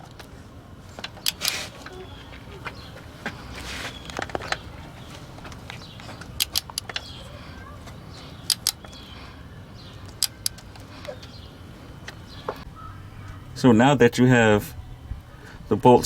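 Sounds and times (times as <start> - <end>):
torque wrench clicking: 1.2 - 1.6, 6.3 - 7.1, 8.4 - 9.0, 10.0 - 10.7.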